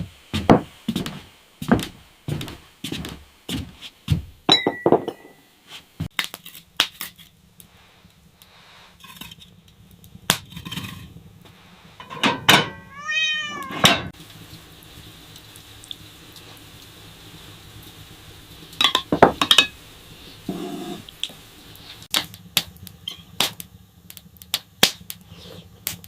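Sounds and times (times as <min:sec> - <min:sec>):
cat meowing: 0:12.7 - 0:14.0.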